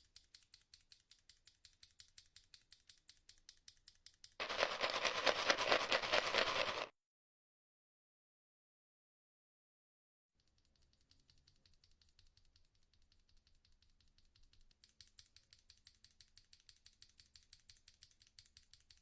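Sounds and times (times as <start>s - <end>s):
mechanical keyboard typing: 4.4s - 6.9s.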